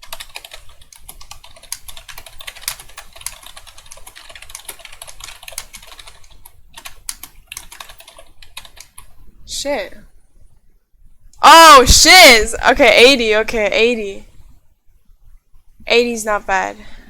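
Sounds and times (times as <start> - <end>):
keyboard typing: 0.0 - 9.2.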